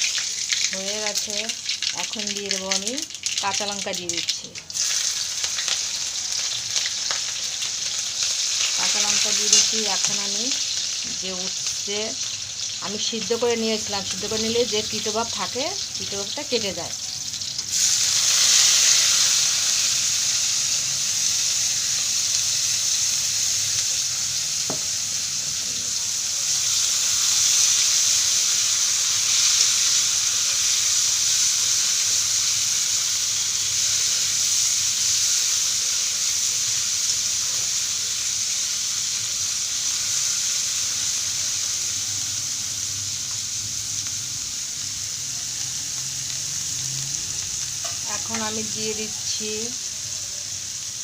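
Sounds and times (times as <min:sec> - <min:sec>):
food sizzling in hot oil: 0:00.0 - 0:51.0.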